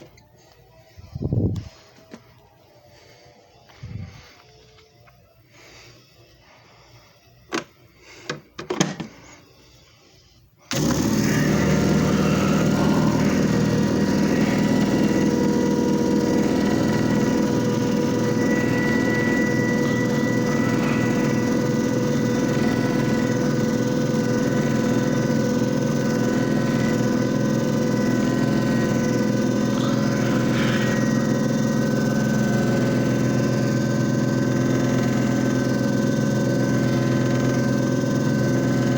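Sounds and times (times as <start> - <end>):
machine motor humming: 10.7 - 38.9.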